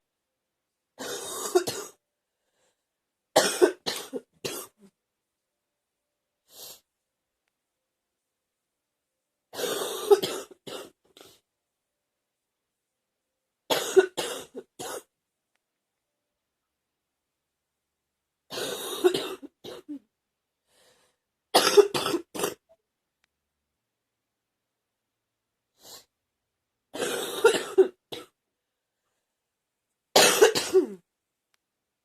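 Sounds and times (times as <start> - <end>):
girl coughing: 3.4 - 4.8, 9.6 - 11.0, 13.7 - 15.1, 18.5 - 20.0, 21.6 - 22.6, 27.0 - 28.4, 30.2 - 31.0.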